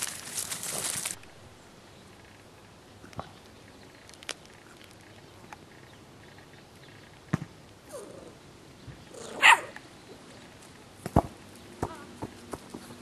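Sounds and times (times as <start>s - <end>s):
puppy barking: 9.3s - 9.8s.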